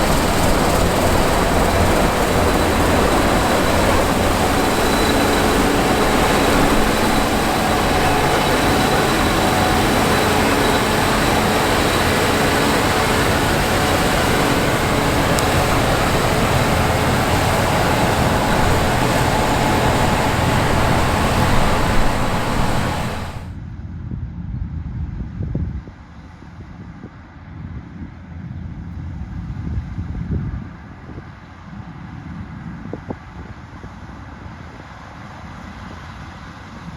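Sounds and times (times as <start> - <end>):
combine harvester drone: 0.0 - 23.5
faint high whine: 0.0 - 23.5
low machine rumble: 0.0 - 23.5.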